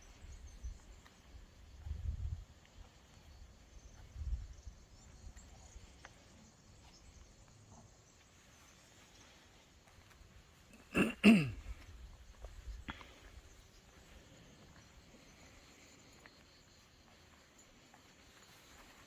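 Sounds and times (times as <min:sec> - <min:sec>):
quiet outdoor background: 0:00.0 - 0:19.0
person clearing throat: 0:10.7 - 0:11.8
person coughing: 0:10.8 - 0:11.8.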